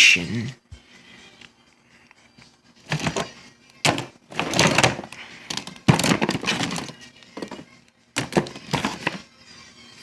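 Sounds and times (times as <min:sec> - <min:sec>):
plastic figures knocking and clattering: 0:02.9 - 0:09.2.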